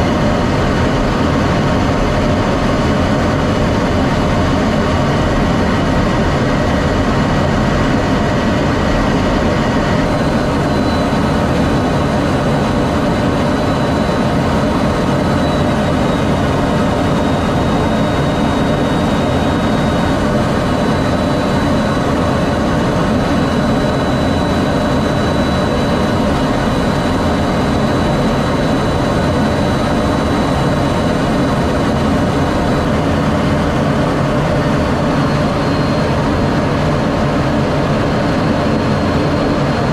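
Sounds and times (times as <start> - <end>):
jet engine rumble: 0.0 - 39.9
faint thin whine: 8.7 - 39.9.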